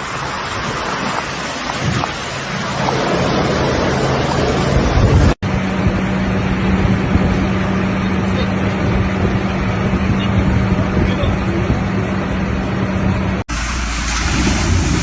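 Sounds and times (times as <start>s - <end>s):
floodwater rushing: 0.0s - 5.0s, 13.5s - 15.0s
wind on microphone: 0.0s - 13.4s.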